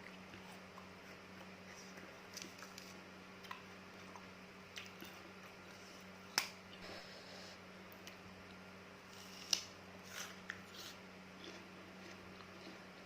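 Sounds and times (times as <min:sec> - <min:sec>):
mouth chewing wet food: 0:10.0 - 0:13.0.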